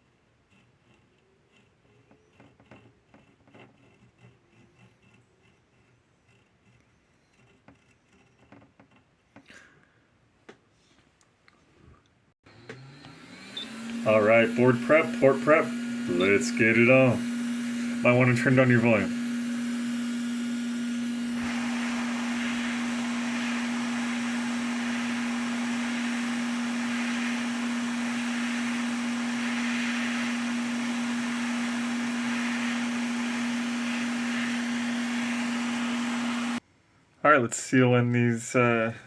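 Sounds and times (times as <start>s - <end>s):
hot air station hissing: 13.2s - 36.6s.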